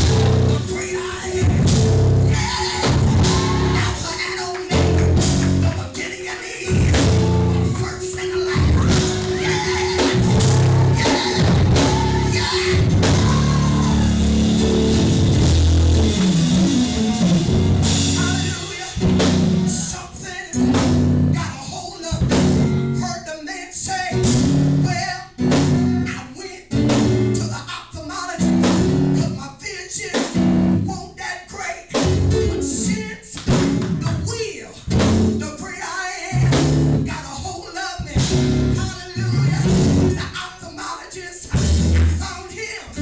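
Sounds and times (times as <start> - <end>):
voices singing: 0.0 - 20.8
church band music: 0.0 - 43.0.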